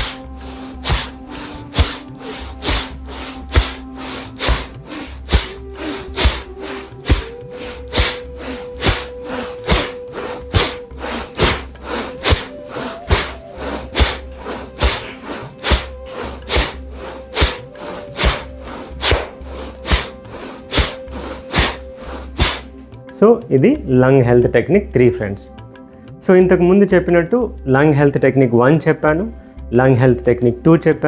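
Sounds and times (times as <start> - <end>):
forceful hissing breaths: 0.0 - 22.9
background music with sustained tones: 0.0 - 31.0.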